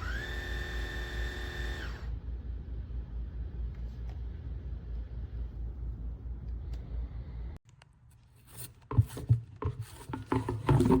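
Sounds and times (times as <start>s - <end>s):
steady low motor hum: 0.0s - 7.7s.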